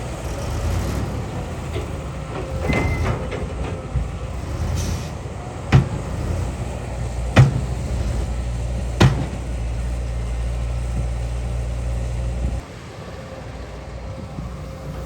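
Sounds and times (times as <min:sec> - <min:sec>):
diesel engine running: 0:00.0 - 0:15.0
sharp knocks: 0:07.3 - 0:10.0.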